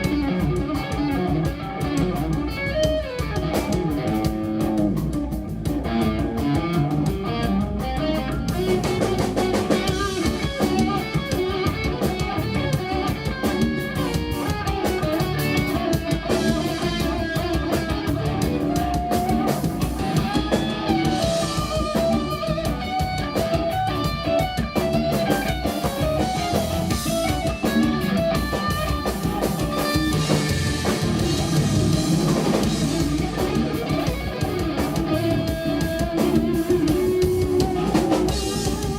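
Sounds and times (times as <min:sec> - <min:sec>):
bass guitar: 0:00.0 - 0:38.9
drum kit: 0:00.0 - 0:38.9
electric guitar lines: 0:00.0 - 0:38.9.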